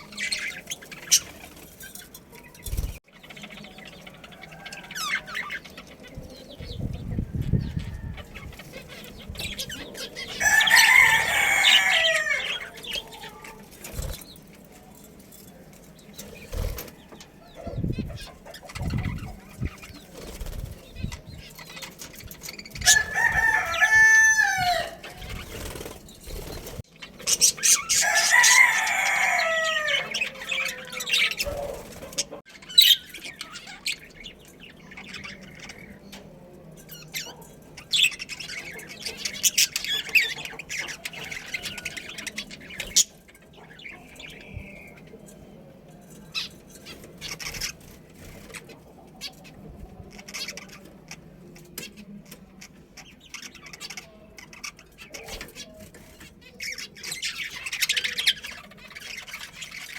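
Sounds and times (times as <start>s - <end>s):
high bird chatter: 0.0s - 59.9s
rooster crowing: 10.3s - 13.4s, 22.8s - 25.2s, 27.9s - 31.7s.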